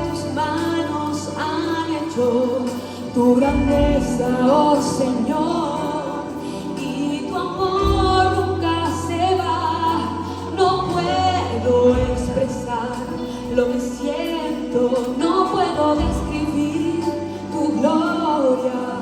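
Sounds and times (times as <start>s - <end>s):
choir singing worship song: 0.0s - 19.0s
deep bass notes: 3.4s - 6.7s, 7.6s - 14.9s.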